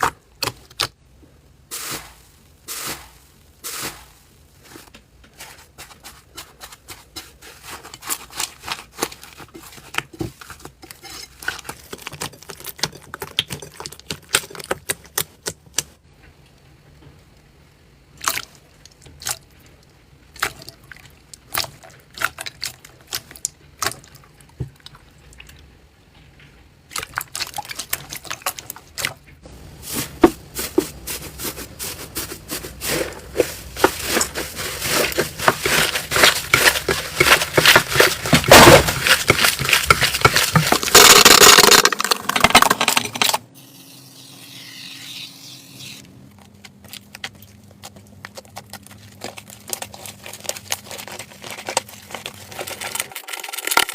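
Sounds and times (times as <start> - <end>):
slime popping and crackling: 33.2 - 43.4, 46.7 - 53.9.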